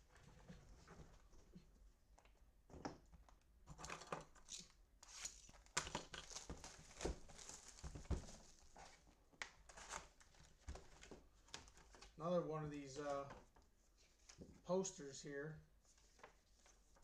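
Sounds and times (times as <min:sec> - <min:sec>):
plastic wrapping crinkling and tearing: 0:04.5 - 0:12.2.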